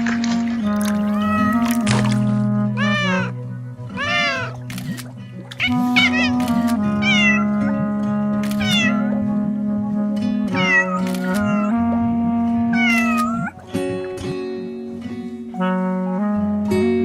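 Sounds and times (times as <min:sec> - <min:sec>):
held musical chords: 0:00.0 - 0:17.0
cat meowing: 0:01.1 - 0:01.9, 0:02.8 - 0:04.6, 0:05.6 - 0:07.8, 0:08.6 - 0:09.1, 0:10.5 - 0:11.8, 0:12.7 - 0:13.6.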